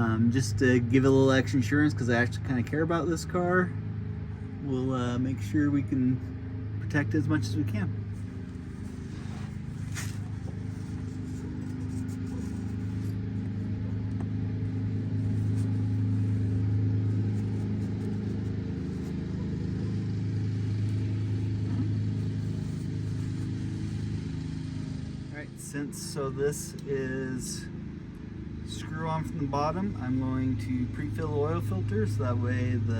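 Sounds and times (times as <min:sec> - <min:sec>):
low machine hum: 0:00.0 - 0:32.9.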